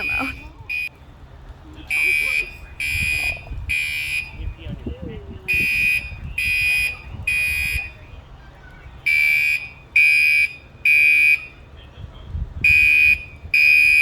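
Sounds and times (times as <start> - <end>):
fire alarm high-pitched beeps: 2.0 - 4.5, 5.5 - 8.0, 9.1 - 11.6, 12.7 - 14.0.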